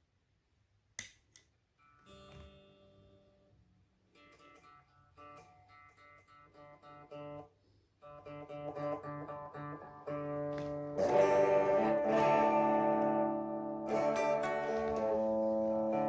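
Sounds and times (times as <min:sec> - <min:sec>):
clean electric guitar notes: 0:08.4 - 0:16.0
strummed guitar chord: 0:08.8 - 0:16.0.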